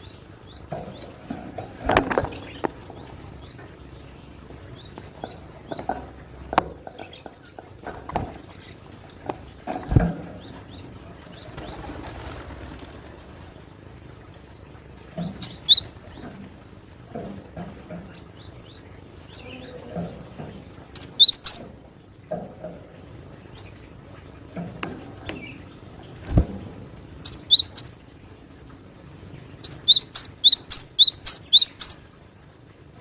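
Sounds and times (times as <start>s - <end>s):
faint bird chirps: 14.9s - 16.0s, 20.9s - 21.7s, 27.2s - 28.0s, 29.6s - 32.0s
bird whistling song: 15.3s - 16.0s, 20.9s - 21.6s, 27.2s - 28.0s, 29.6s - 32.0s.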